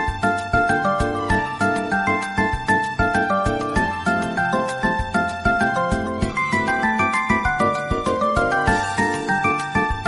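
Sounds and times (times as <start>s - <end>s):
electronic phone ringtone melody: 6.4s - 10.0s.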